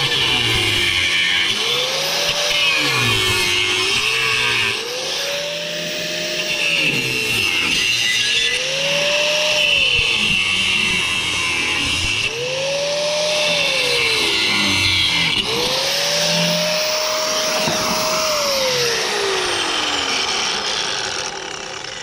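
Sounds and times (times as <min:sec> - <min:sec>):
power tool motor spinning: 0:00.0 - 0:22.0
metal grinding: 0:10.4 - 0:22.0.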